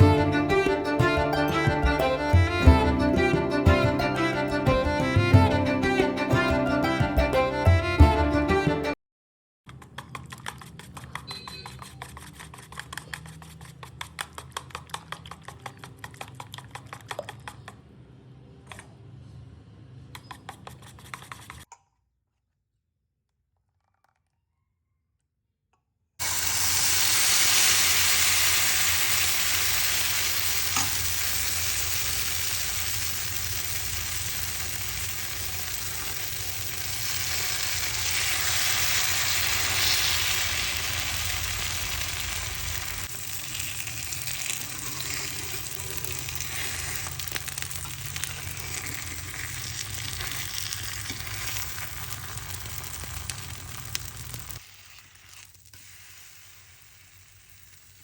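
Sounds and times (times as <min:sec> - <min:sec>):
pancakes sizzling in hot oil: 0:26.2 - 0:58.0.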